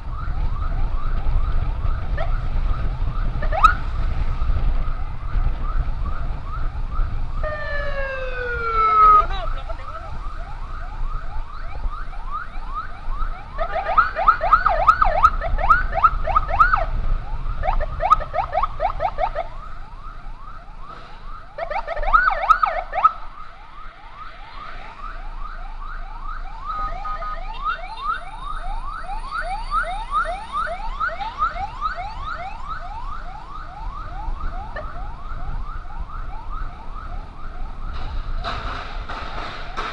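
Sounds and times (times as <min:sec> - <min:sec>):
sirens in fast yelp mode: 0:00.0 - 0:39.2
siren tone falling in pitch: 0:05.0 - 0:37.7
louder siren yelp bursts: 0:07.4 - 0:11.0, 0:11.7 - 0:16.9, 0:21.6 - 0:37.2.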